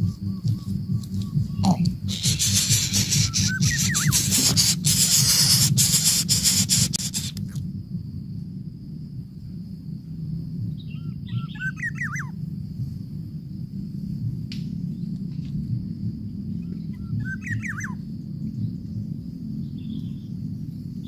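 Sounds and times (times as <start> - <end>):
small bird chirping: 0.0 - 7.4, 10.8 - 12.3
low hum: 0.0 - 11.5
high thin tone: 2.1 - 7.3
loud hiss with clicks: 2.1 - 7.7.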